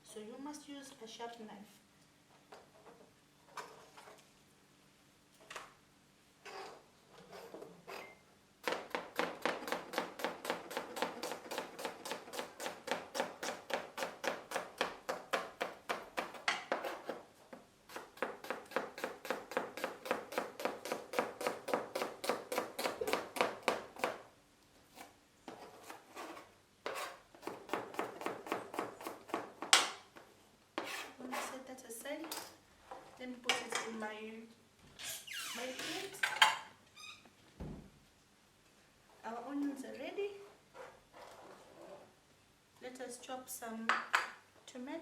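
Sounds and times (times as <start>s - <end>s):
knife chopping on cutting board: 8.6s - 17.2s, 17.9s - 24.2s, 26.9s - 30.0s.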